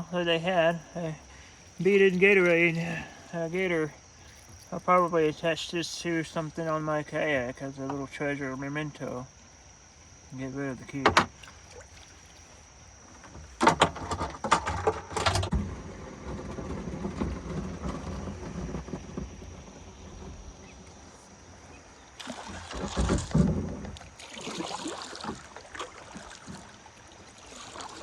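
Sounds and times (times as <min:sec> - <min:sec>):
paddle strokes: 0:00.0 - 0:08.1, 0:10.8 - 0:28.0
water splashing: 0:00.0 - 0:08.3, 0:10.5 - 0:12.6, 0:21.0 - 0:28.0
knocks against kayak hull: 0:11.0 - 0:11.5, 0:22.5 - 0:24.1.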